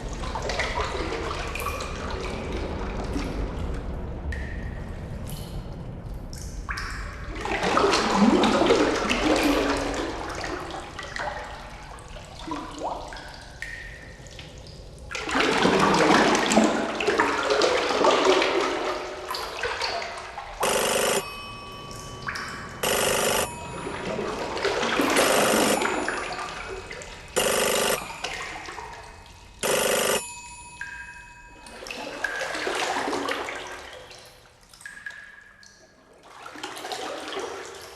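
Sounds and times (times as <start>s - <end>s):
ringing electronic pulses: 20.6s - 21.4s, 22.8s - 23.8s, 25.2s - 26.4s, 27.4s - 28.2s, 29.6s - 30.4s.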